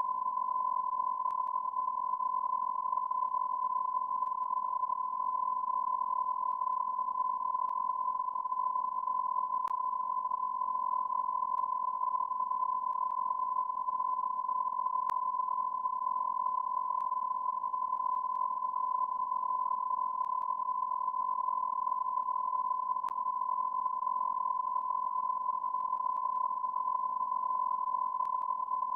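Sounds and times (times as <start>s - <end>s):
faint clicks: 20.2s - 20.5s, 28.2s - 28.5s.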